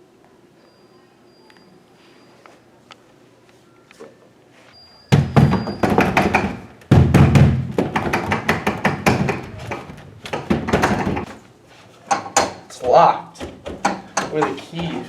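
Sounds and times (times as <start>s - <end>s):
loud rapid knocking and banging: 5.2s - 11.3s, 13.4s - 15.0s.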